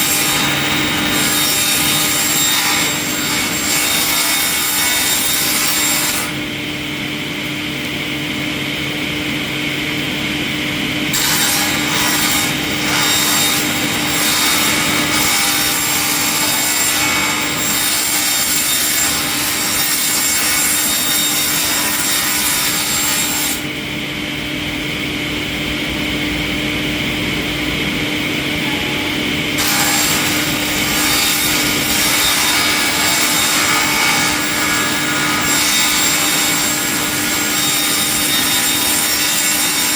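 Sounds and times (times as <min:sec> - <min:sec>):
machine hum: 0:22.8 - 0:37.1.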